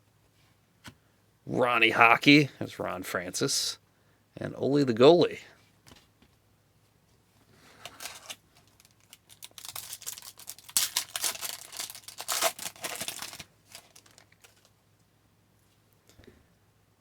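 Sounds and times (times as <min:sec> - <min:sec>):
wrapper tearing and crinkling: 0:07.9 - 0:14.7.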